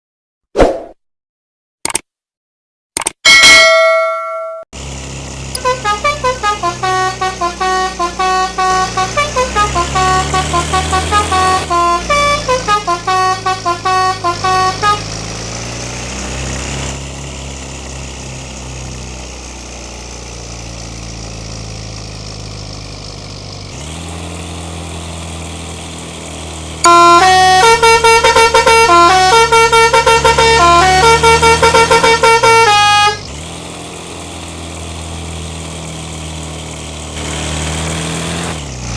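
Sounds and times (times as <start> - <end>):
bus engine running: 4.8 - 38.9
musical bus air horn: 5.6 - 15.2, 26.8 - 33.3.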